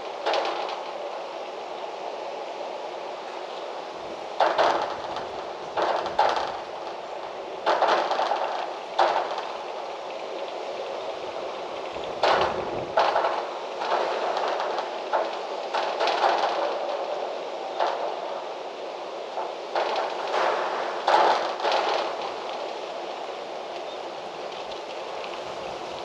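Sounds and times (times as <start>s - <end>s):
loud wind gusts: 0.0s - 26.0s
wind blowing: 0.0s - 26.0s.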